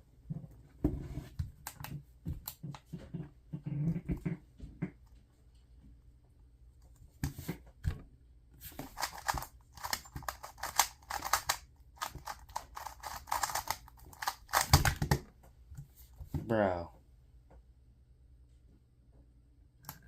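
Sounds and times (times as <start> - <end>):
speed cube plastic clicking: 8.8 - 15.2.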